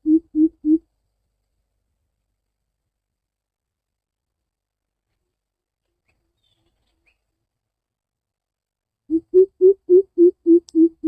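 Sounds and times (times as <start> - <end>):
faint low bird hoots: 0.0 - 0.8, 9.1 - 11.0.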